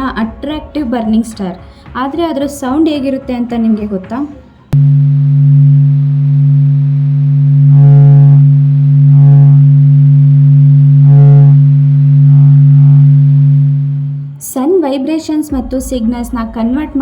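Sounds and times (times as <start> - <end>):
higher overtones: 4.7 - 14.4
deep steady drone: 4.7 - 14.5.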